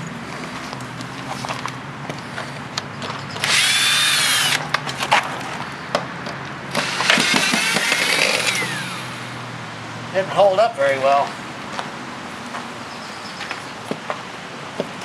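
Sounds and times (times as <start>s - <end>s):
power drill whining: 3.4s - 4.7s, 6.7s - 9.4s.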